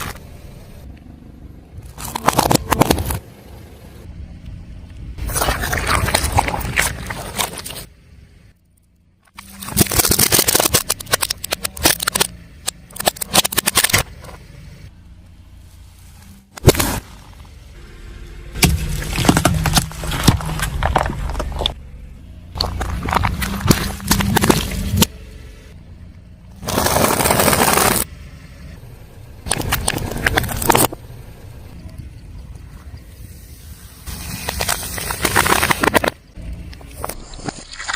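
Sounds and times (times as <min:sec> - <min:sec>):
low engine rumble: 0:00.0 - 0:37.5
tyre crushing crunchy objects: 0:01.8 - 0:03.2, 0:05.2 - 0:07.9, 0:09.4 - 0:14.4, 0:16.6 - 0:17.5, 0:18.5 - 0:21.8, 0:22.6 - 0:25.1, 0:26.6 - 0:28.1, 0:34.1 - 0:37.9
tyre crushing objects crackling: 0:16.6 - 0:17.4, 0:18.6 - 0:21.8, 0:22.6 - 0:25.1, 0:26.6 - 0:28.1, 0:34.1 - 0:36.3.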